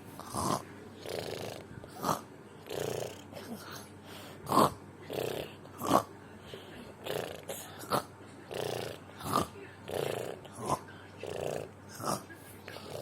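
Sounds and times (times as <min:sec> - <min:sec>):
sharp snorts: 0:00.2 - 0:03.4, 0:04.4 - 0:06.1, 0:07.0 - 0:13.0
person snoring: 0:00.2 - 0:03.6, 0:04.4 - 0:06.1, 0:07.0 - 0:12.2.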